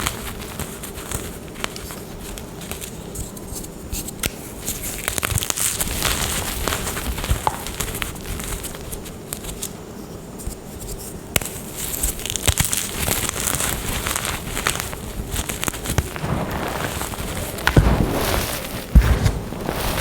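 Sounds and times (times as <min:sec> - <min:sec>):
chalk crunching and crackling: 0:00.0 - 0:20.0
sharp crack: 0:14.6 - 0:20.0.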